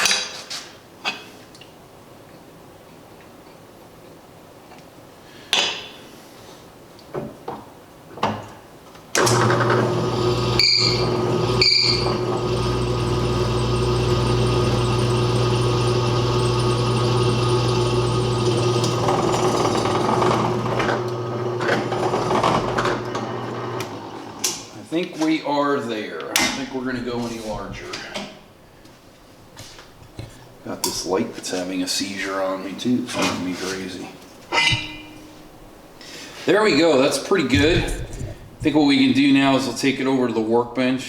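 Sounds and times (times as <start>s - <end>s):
electric drill drilling bolt: 9.2s - 24.6s.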